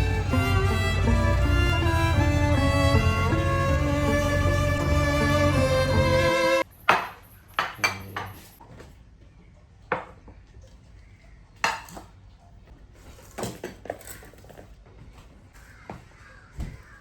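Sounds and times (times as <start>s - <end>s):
hard objects clinking and knocking: 6.8s - 8.5s.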